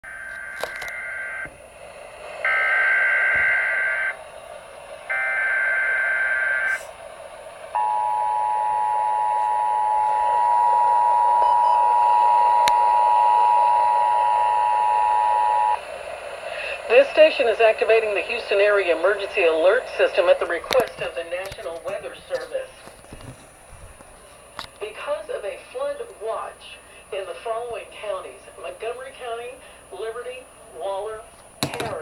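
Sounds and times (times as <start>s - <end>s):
radio hiss: 6.0s - 7.6s, 13.7s - 23.2s
two-tone attention signal: 7.8s - 15.8s.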